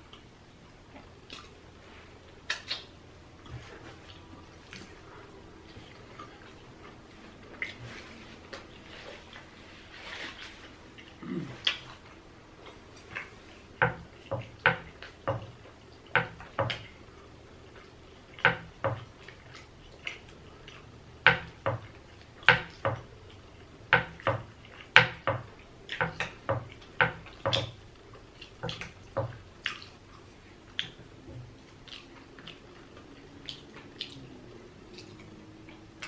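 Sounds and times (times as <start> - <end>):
mouth smacking while eating: 0.9 - 9.5, 10.1 - 13.5, 25.6 - 36.0.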